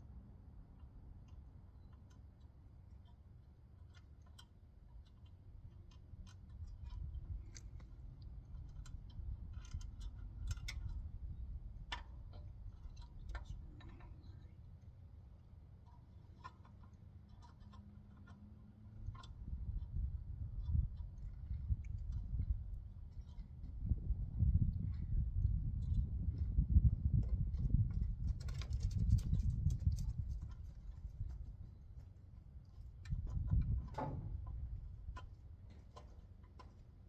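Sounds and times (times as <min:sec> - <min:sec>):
light clicks and taps: 0:00.8 - 0:11.0, 0:11.8 - 0:14.9, 0:27.2 - 0:36.9.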